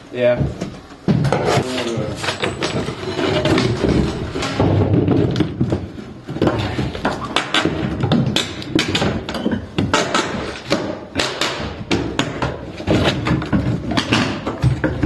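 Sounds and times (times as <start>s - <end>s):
knocks taps and thuds: 3.4s - 15.0s.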